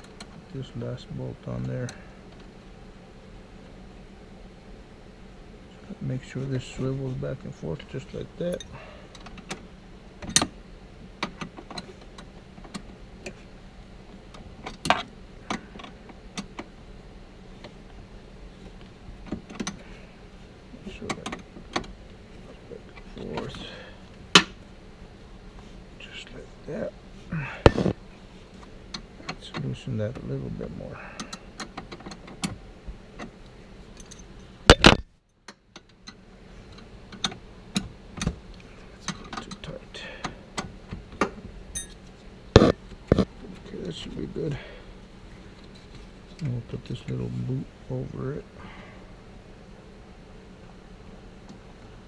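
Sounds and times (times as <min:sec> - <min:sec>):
metal tool clicks and clinks: 0:41.8 - 0:42.0.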